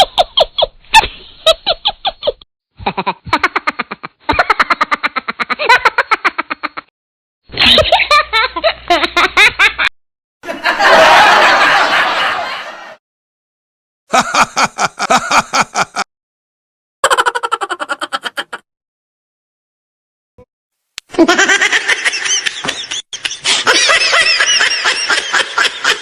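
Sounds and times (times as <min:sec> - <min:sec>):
rhythmic pulsing laughter: 0:14.1 - 0:16.1.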